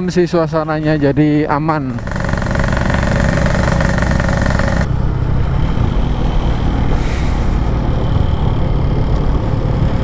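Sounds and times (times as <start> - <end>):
two-stroke motorcycle engine: 1.8 - 5.2
high engine whine: 1.8 - 10.0.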